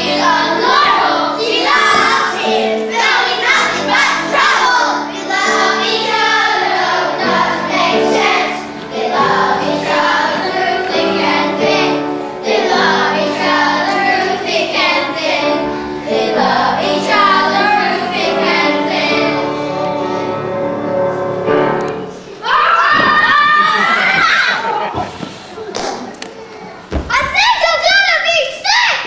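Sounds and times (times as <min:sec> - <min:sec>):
instrumental accompaniment: 0:00.0 - 0:22.4
children singing: 0:00.0 - 0:24.9.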